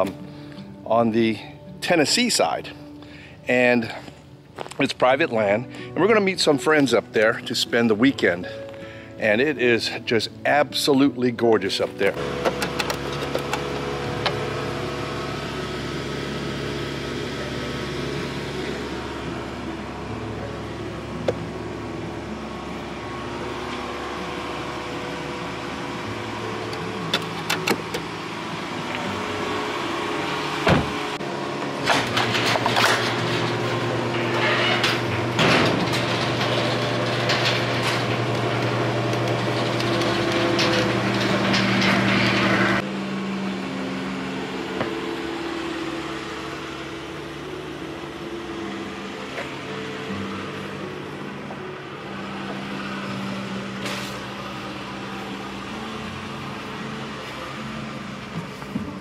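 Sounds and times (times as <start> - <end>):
vehicle engine and road hum: 0.0 - 10.6, 11.6 - 59.0
clicks and rattles: 31.9 - 42.7.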